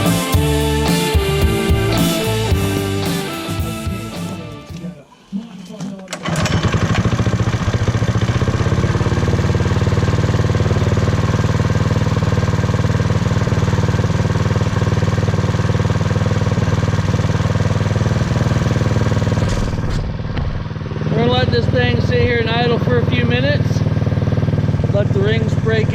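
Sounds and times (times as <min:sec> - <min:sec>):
small engine idling: 0:06.2 - 0:25.9.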